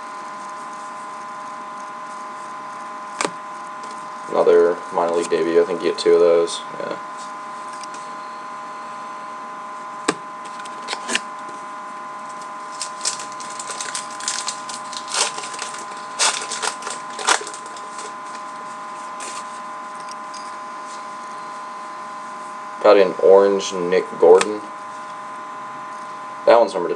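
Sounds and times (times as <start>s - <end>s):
steady hum: 0.0s - 26.9s
cards being flipped through: 10.4s - 11.3s, 12.3s - 18.4s.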